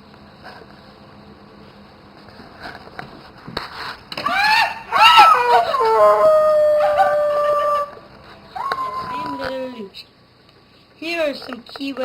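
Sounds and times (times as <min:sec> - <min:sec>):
high-pitched wailing cry: 0:04.2 - 0:08.0, 0:08.6 - 0:09.9.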